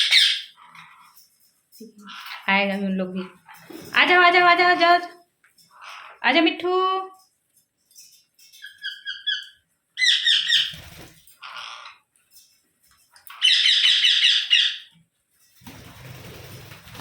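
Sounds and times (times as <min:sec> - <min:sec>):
parakeets screeching: 0:00.0 - 0:01.3, 0:02.0 - 0:04.1, 0:05.6 - 0:06.3, 0:08.5 - 0:12.1, 0:13.2 - 0:15.0.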